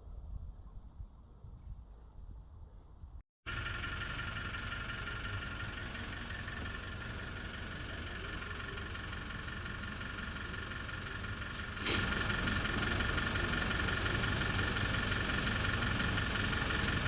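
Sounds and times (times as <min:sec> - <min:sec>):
engine running: 0:03.5 - 0:17.0.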